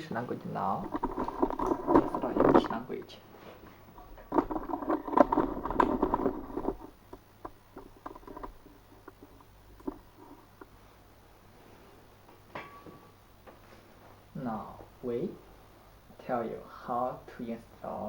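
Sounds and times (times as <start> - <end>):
rustling: 0.8 - 12.2.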